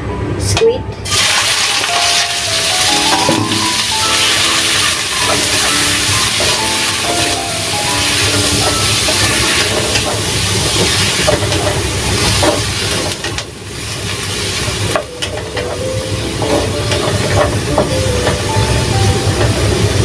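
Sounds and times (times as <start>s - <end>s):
squid sizzling in hot oil: 1.1s - 15.3s.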